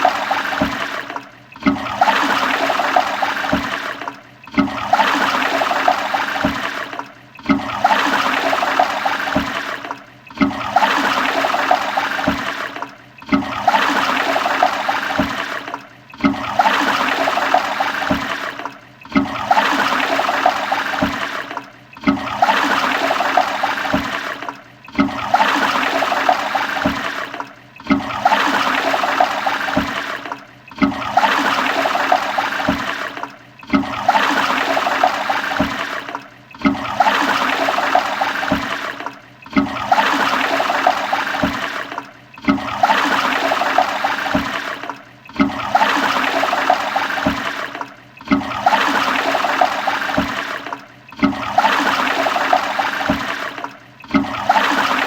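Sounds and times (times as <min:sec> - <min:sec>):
toilet flushing: 0:00.0 - 0:55.0.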